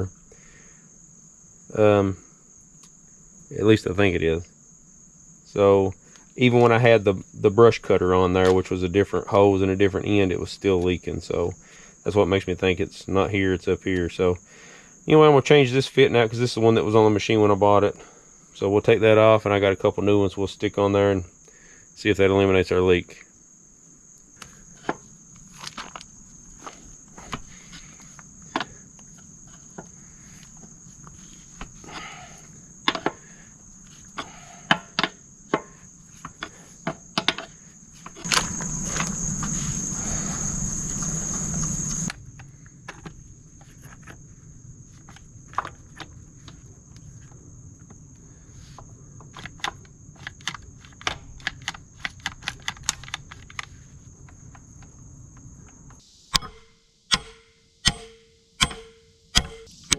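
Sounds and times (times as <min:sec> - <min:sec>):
high insect drone: 0:00.0 - 0:59.9.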